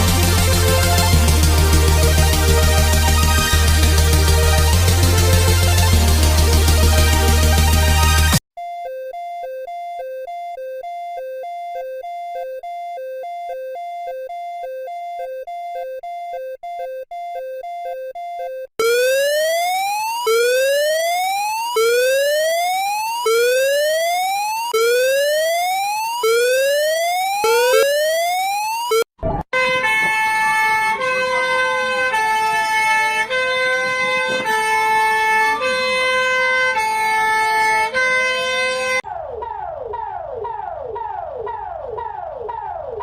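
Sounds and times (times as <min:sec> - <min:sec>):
stepped alarm tones: 0:08.6 - 0:30.5
gliding alarm tone: 0:18.8 - 0:29.4
rising whoop siren: 0:18.8 - 0:43.0.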